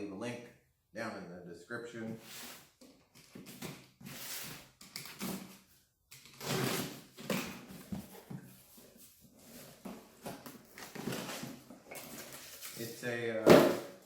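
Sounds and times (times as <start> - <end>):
box scrapes and rustles: 3.4 - 5.5, 6.4 - 12.8.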